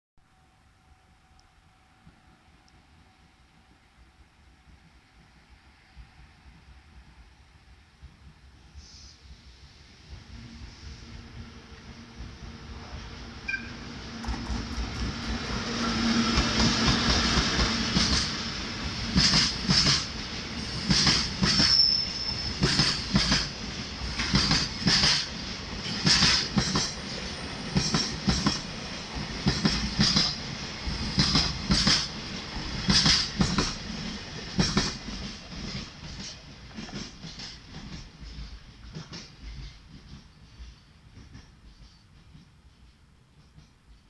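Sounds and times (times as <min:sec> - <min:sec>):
train wheels clacking over rail joints: 0:14.2 - 0:21.9, 0:22.5 - 0:44.0
wheel squeal: 0:17.2 - 0:23.0.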